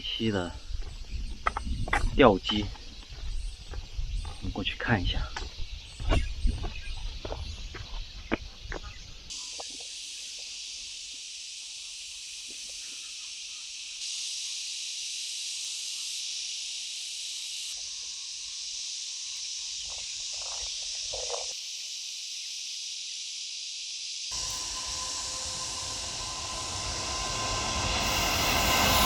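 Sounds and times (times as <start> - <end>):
cicadas buzzing: 0.0 - 29.0
light footsteps: 0.7 - 4.5, 5.2 - 9.0.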